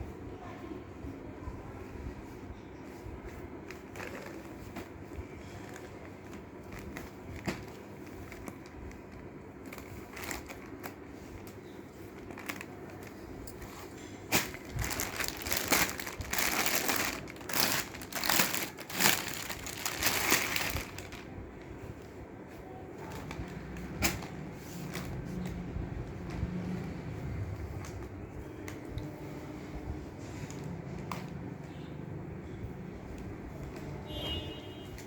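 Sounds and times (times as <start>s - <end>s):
packaging crinkling and rustling: 3.3s - 22.1s.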